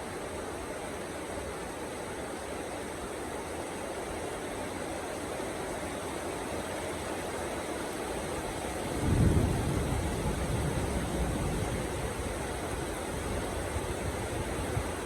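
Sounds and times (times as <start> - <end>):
heavy rain falling: 7.8 - 15.0
low rumble of thunder: 8.8 - 15.0.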